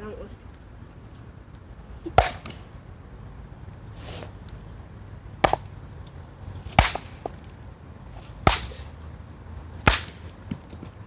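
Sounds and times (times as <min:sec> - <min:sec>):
insects chirring: 0:00.0 - 0:11.0
axe chopping wood: 0:02.1 - 0:02.6, 0:05.4 - 0:05.7, 0:06.7 - 0:07.4, 0:08.4 - 0:08.9, 0:09.8 - 0:10.9.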